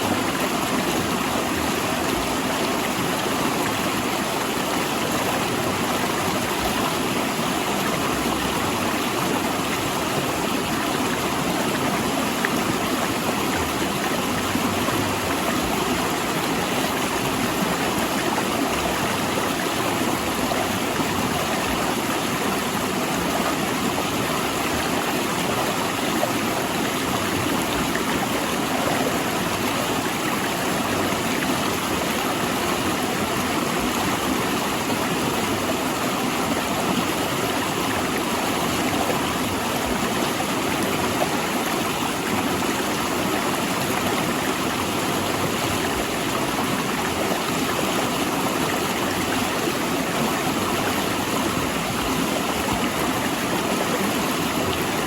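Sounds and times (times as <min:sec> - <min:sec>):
river water rushing over rocks: 0:00.0 - 0:55.0.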